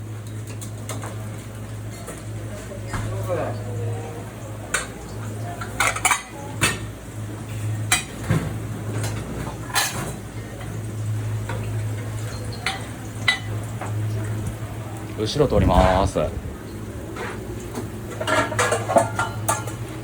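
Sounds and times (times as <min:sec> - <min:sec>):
dishes and utensils clattering: 0:04.7 - 0:06.9, 0:07.6 - 0:10.8, 0:11.4 - 0:14.1, 0:17.1 - 0:20.0.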